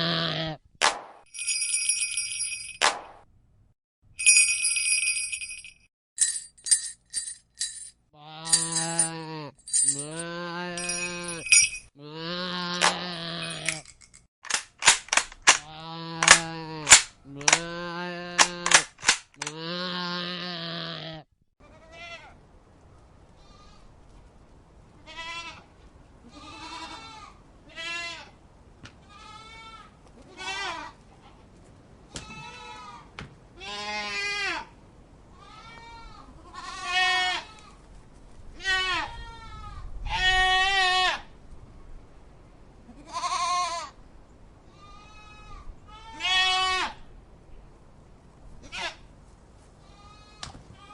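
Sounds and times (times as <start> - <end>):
goats bleating: 0.0 - 0.6, 8.2 - 13.8, 15.6 - 18.8, 19.4 - 22.3, 25.0 - 28.4, 29.0 - 31.0, 32.2 - 34.7, 35.4 - 37.8, 38.6 - 41.3, 44.8 - 47.0
young goat bleating: 0.0 - 0.6, 8.2 - 11.4, 12.0 - 13.7, 15.6 - 18.8, 19.4 - 22.4, 23.4 - 23.9, 25.0 - 28.4, 29.0 - 31.0, 32.2 - 34.7, 35.4 - 37.8, 38.6 - 41.3, 42.9 - 44.0, 44.7 - 47.0, 48.6 - 49.1, 49.8 - 50.9
sharp clicks: 13.6 - 17.7, 18.4 - 19.6.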